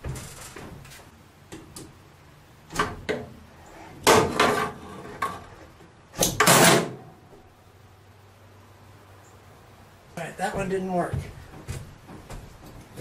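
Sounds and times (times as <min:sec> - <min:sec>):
tools scraping and clattering: 0:02.8 - 0:05.8.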